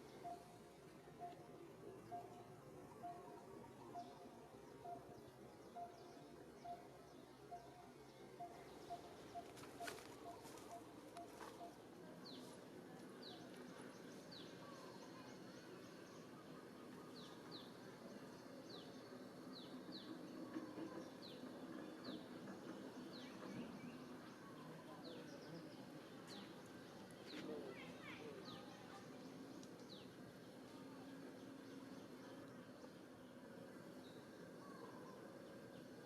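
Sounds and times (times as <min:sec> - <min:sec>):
faint outdoor ambience: 0:00.0 - 0:36.0
bird chirping: 0:01.2 - 0:12.5.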